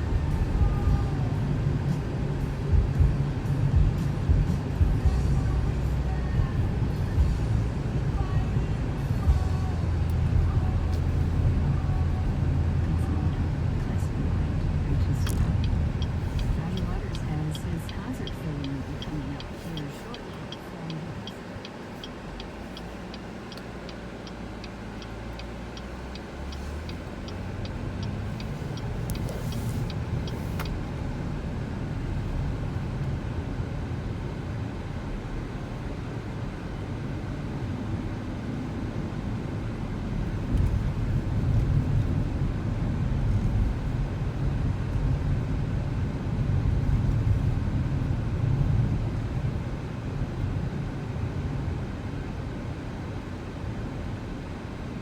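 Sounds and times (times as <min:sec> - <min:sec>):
turn signal clicking: 0:00.0 - 0:33.4, 0:39.4 - 0:50.7
car engine and road noise: 0:00.0 - 0:55.0.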